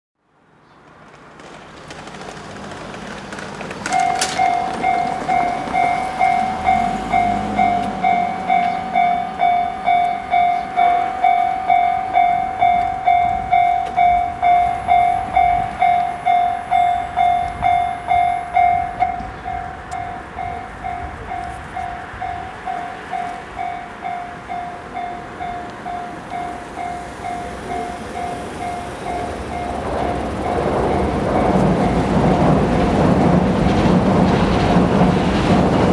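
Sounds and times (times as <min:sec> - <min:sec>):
diesel locomotive rumble: 0:00.8 - 0:35.9
level-crossing alarm tone: 0:03.8 - 0:32.4.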